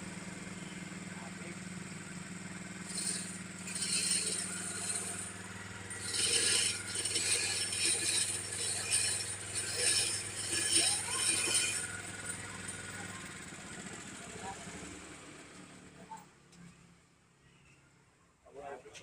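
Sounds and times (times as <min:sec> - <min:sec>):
motor hum: 0:00.0 - 0:16.0
metallic rattling and grinding: 0:02.6 - 0:13.6.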